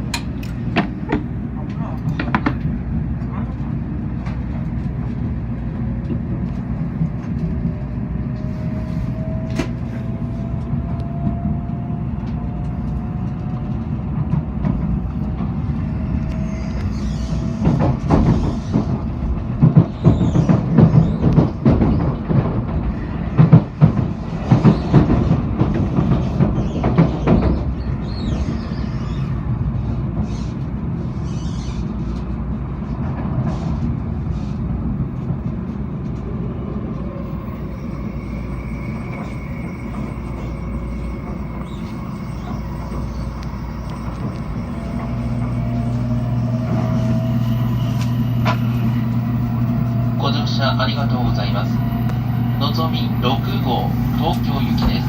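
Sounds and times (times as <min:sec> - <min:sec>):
faint train whine: 0:00.0 - 0:55.0
train cabin low rumble: 0:00.0 - 0:55.0
loud irregular knocking and clatter: 0:17.6 - 0:27.8.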